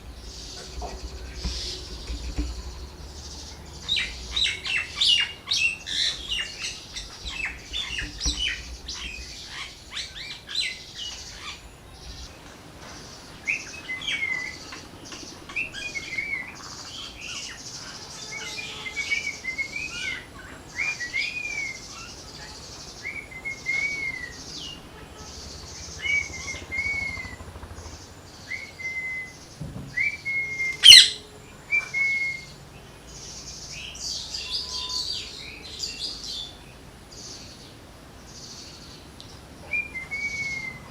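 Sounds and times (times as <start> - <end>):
parrots chirping: 0.0 - 11.7, 30.8 - 31.2
parrot shriek: 30.8 - 31.2.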